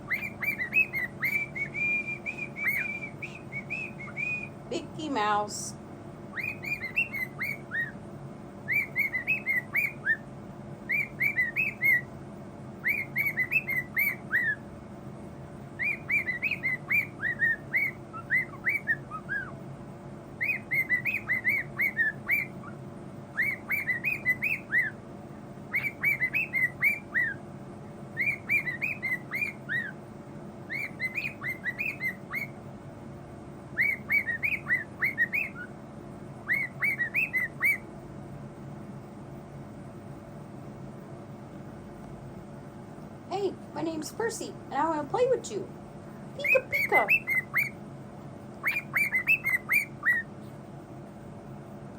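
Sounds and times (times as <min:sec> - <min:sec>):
bird chirping whistled notes: 0:00.0 - 0:04.6, 0:06.3 - 0:08.0, 0:08.6 - 0:10.2, 0:10.8 - 0:12.1, 0:12.8 - 0:14.6, 0:15.8 - 0:19.6, 0:20.4 - 0:25.0, 0:25.7 - 0:27.4, 0:28.2 - 0:30.0, 0:30.7 - 0:32.6, 0:33.8 - 0:35.7, 0:36.4 - 0:37.8, 0:46.4 - 0:47.8, 0:48.6 - 0:50.3.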